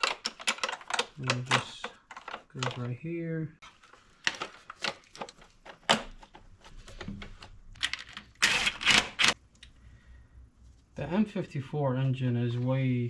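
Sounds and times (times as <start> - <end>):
clicks of parts being handled: 0.0 - 3.0.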